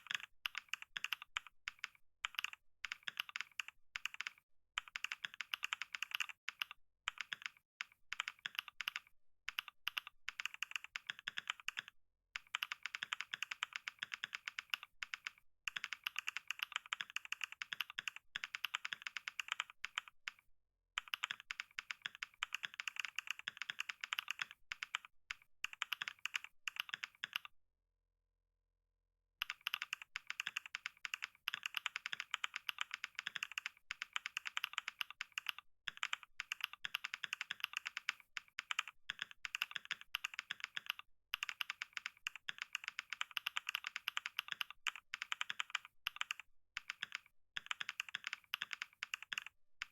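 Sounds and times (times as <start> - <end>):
keyboard typing: 0.0 - 27.5, 29.4 - 49.9.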